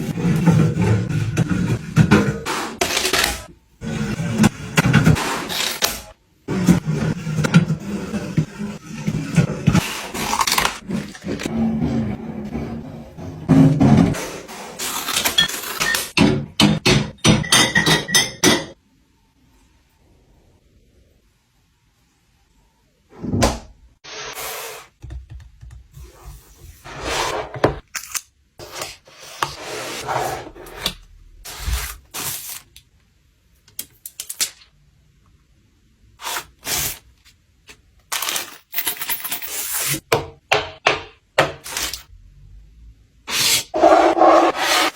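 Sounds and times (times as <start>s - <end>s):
packaging rustling and scraping: 26.8s - 32.8s, 36.2s - 40.0s.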